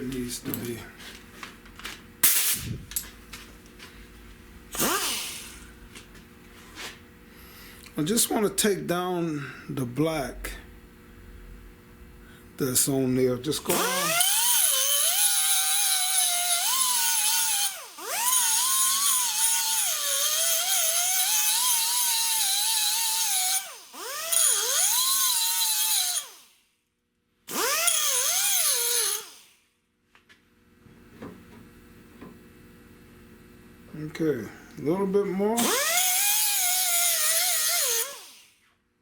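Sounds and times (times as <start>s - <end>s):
grinder whining on metal: 4.7s - 5.7s, 13.6s - 26.6s, 27.5s - 29.5s, 35.0s - 38.5s.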